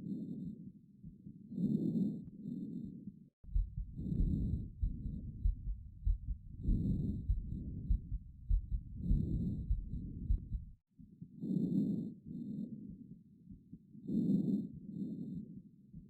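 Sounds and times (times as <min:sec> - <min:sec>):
low thuds: 0:03.5 - 0:10.8.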